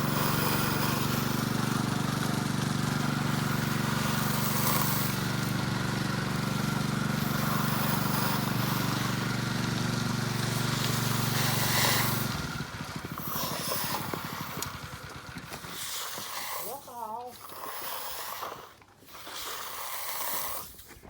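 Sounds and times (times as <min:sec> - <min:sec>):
engine running steadily: 0:00.0 - 0:19.4.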